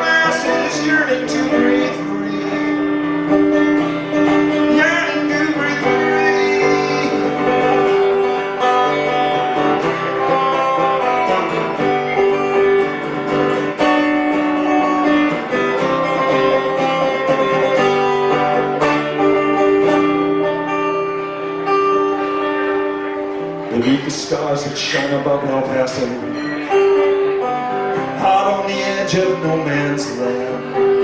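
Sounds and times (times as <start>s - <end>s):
guitar picking and strumming: 0.0s - 31.0s.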